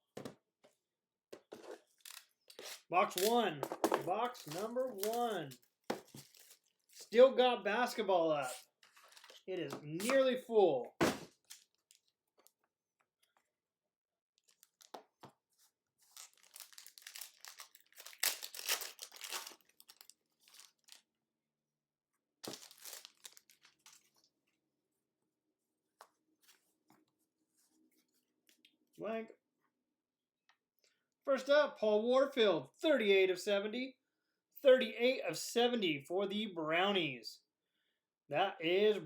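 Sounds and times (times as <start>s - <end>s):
packaging being torn open: 4.3s - 5.4s, 16.2s - 21.0s, 22.4s - 24.0s.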